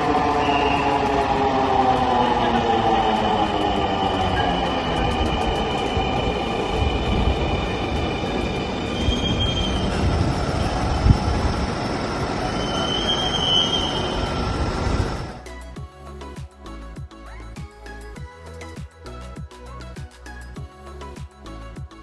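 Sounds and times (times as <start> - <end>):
electric train rumble: 0.0 - 15.4
train wheel squeals: 0.1 - 15.3.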